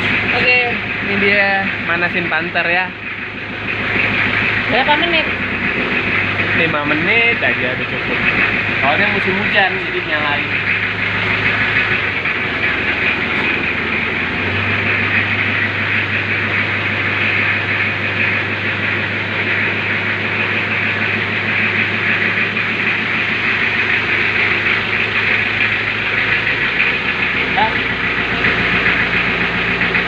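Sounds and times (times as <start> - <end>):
diesel engine idling: 0.0 - 30.0.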